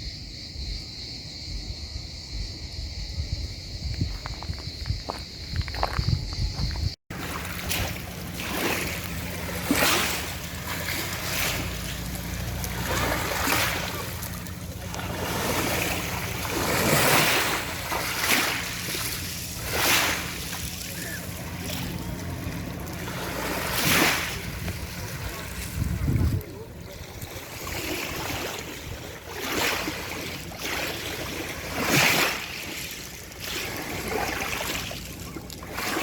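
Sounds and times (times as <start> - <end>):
low hum: 7.1 - 26.8
sea surf washing: 7.1 - 36.0.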